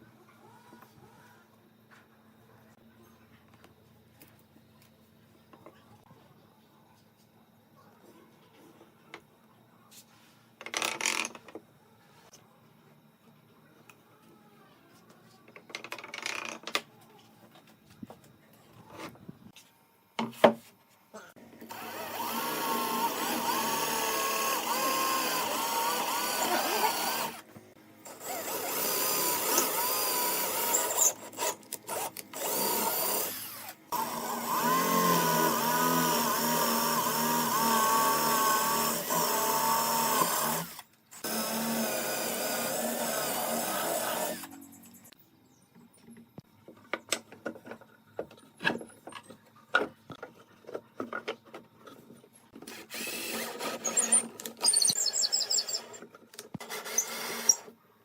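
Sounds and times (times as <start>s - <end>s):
power tool cutting wood: 21.7s - 27.4s, 28.1s - 44.6s, 52.6s - 56.0s, 56.6s - 57.7s.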